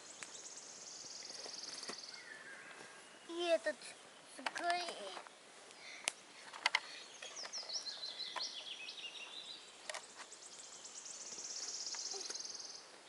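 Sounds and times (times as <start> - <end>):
songbirds chirping: 0.0 - 13.0.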